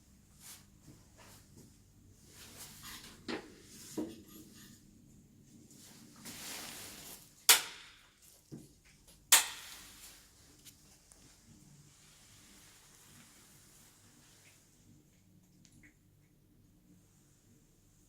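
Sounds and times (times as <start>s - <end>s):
short rustle: 6.0s - 7.4s.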